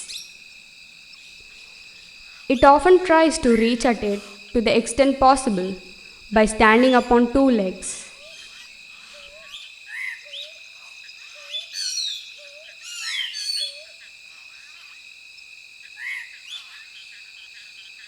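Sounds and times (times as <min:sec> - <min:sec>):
insect drone: 0:00.0 - 0:18.0
higher descending calls: 0:02.5 - 0:08.1.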